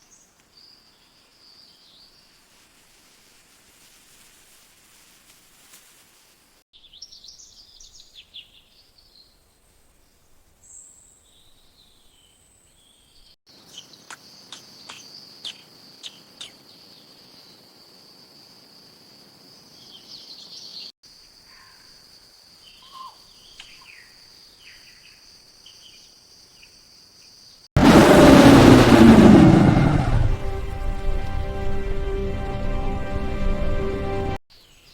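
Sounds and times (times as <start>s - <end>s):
loud rush of noise: 27.8s - 34.4s.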